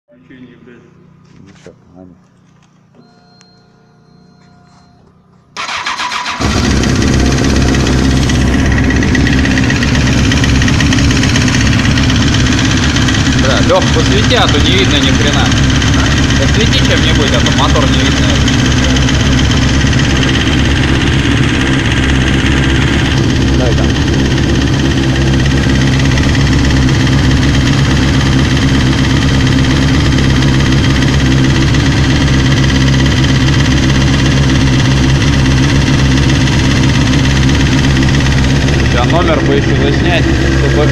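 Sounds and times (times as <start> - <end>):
engine starter cranking: 5.6 - 7.2
engine idling loudly: 5.6 - 40.9.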